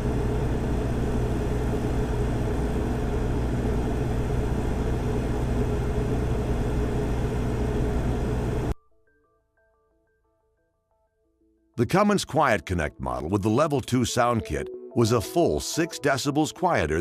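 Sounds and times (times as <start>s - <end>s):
generator engine hum: 0.0s - 8.8s.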